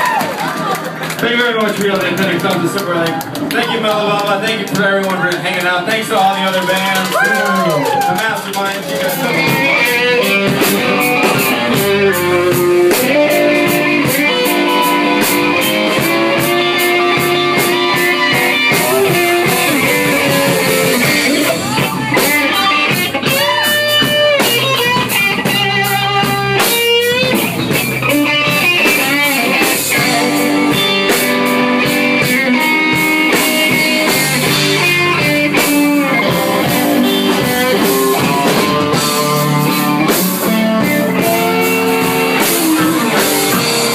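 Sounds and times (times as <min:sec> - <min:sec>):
rock music: 0:00.0 - 0:43.9
sliding guitar notes: 0:08.8 - 0:43.9.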